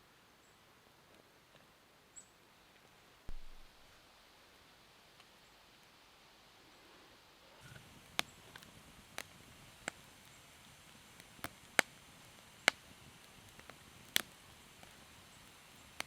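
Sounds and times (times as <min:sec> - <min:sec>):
faint steady hiss: 0:00.0 - 0:16.0
campfire crackling: 0:03.3 - 0:04.0, 0:07.6 - 0:16.0.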